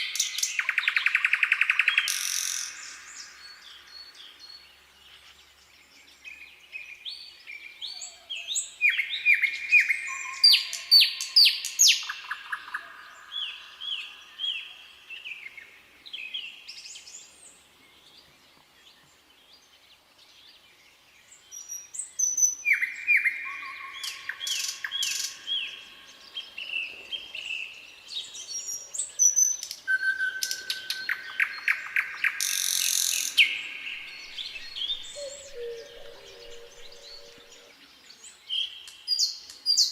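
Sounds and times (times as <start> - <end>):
nightingale singing: 0.0 - 18.3, 21.2 - 39.9.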